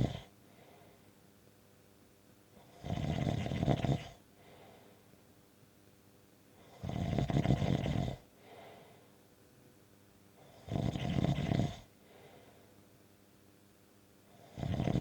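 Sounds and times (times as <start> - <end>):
snoring: 0.0 - 0.3, 2.6 - 4.2, 6.6 - 8.3, 10.4 - 11.9, 14.3 - 15.0
soft breath: 0.0 - 1.2, 4.3 - 5.2, 8.1 - 9.3, 11.8 - 12.9.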